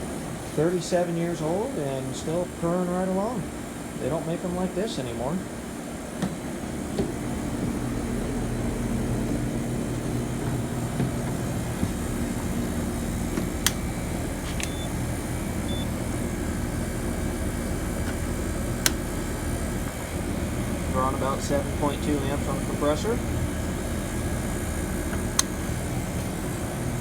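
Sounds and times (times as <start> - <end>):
heat pump humming: 0.0 - 27.0.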